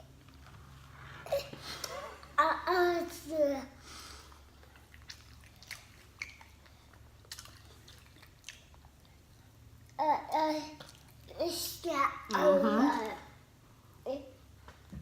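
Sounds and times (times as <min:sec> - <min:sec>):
person chewing food: 0:04.4 - 0:10.0, 0:10.8 - 0:11.3.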